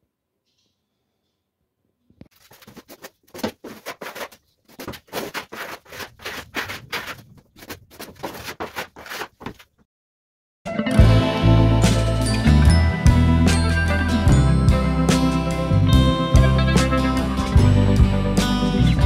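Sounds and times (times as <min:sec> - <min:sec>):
short scraping strokes: 0:02.4 - 0:09.6
music: 0:10.7 - 0:19.0.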